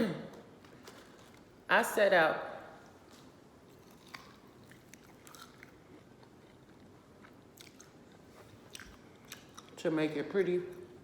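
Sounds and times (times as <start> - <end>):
faint chewing with crunches: 0.3 - 1.6, 2.8 - 10.0.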